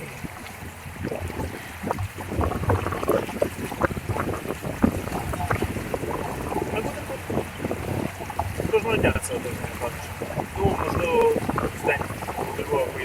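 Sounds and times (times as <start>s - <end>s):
water splashing against boat hulls: 0.0s - 13.0s.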